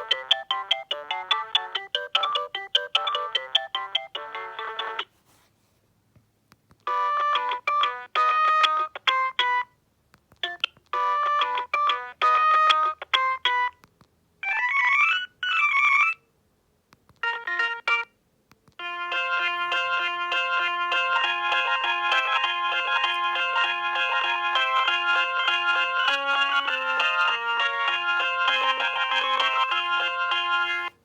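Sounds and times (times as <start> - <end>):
bright electronic melody: 0.0 - 5.0, 18.8 - 31.0
mobile phone ringtone: 0.0 - 5.1, 6.9 - 9.7, 11.0 - 13.7, 17.2 - 18.1, 18.8 - 31.0.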